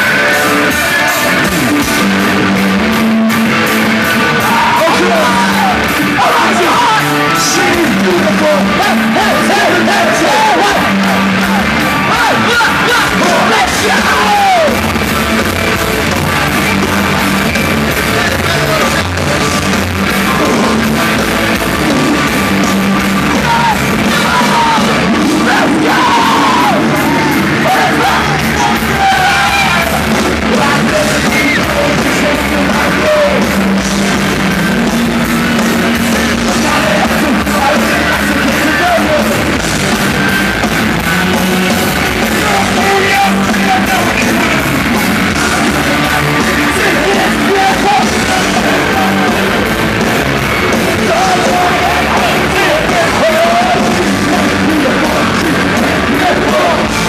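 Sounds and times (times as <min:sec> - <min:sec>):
distorted guitars: 0:00.0 - 0:57.0
drums: 0:00.0 - 0:57.0
person shouting singing: 0:04.0 - 0:14.9, 0:20.1 - 0:33.6, 0:36.0 - 0:39.5, 0:41.0 - 0:57.0.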